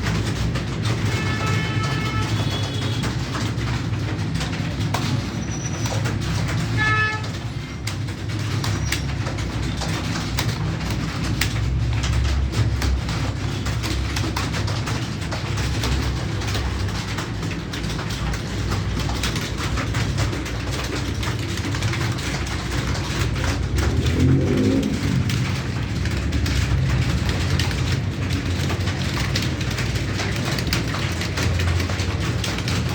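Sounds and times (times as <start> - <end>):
computer keyboard typing: 0.0 - 32.9
steady low rumble: 22.9 - 27.7.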